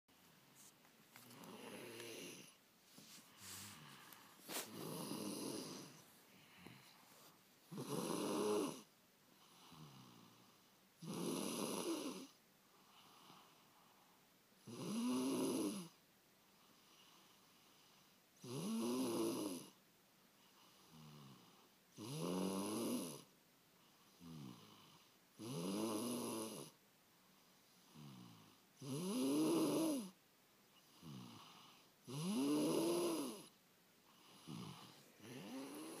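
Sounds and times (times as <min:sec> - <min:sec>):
soft breathing: 0:00.5 - 0:07.8, 0:34.0 - 0:36.0
person snoring: 0:01.2 - 0:02.6, 0:03.4 - 0:07.0, 0:07.7 - 0:08.9, 0:11.0 - 0:12.4, 0:22.0 - 0:23.2, 0:27.9 - 0:30.1, 0:31.0 - 0:33.5, 0:34.2 - 0:36.0.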